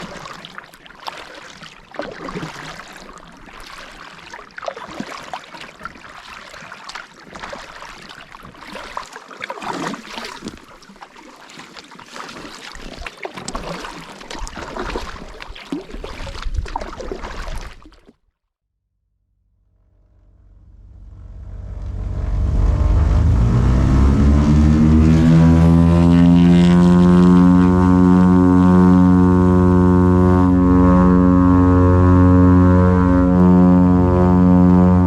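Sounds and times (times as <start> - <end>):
water splashing and trickling: 0.0 - 18.2
wind rumbling on microphone: 16.0 - 17.8.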